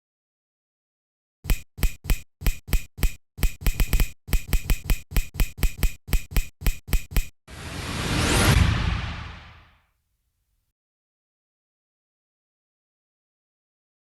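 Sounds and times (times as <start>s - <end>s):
sharp percussive clicks: 1.5s - 7.4s.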